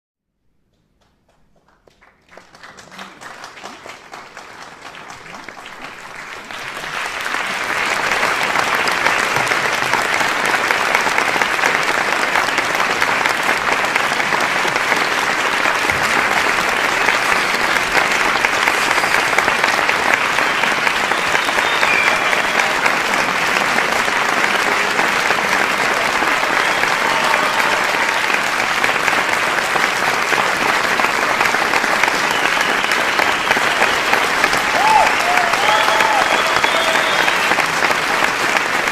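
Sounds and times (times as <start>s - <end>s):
audience applauding: 0.9s - 38.9s
voices in the crowd: 13.8s - 37.9s.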